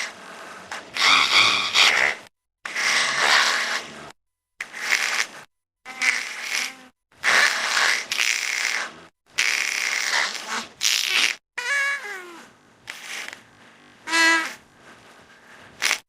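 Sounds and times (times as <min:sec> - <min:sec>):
harsh rasping creature sounds: 0:00.0 - 0:11.4.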